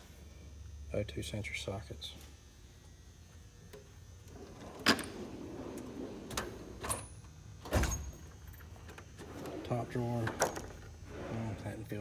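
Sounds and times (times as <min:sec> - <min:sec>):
metal drawers sliding: 0:04.4 - 0:07.0, 0:09.2 - 0:11.6.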